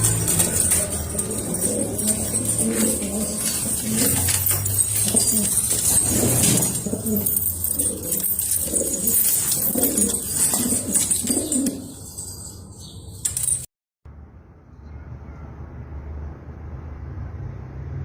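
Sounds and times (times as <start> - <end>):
pigeons cooing: 0.0 - 12.5.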